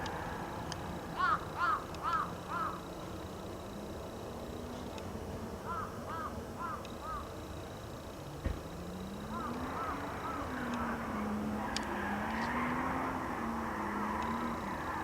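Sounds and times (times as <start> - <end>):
crow cawing: 1.2 - 2.9, 5.6 - 7.3, 9.3 - 11.1.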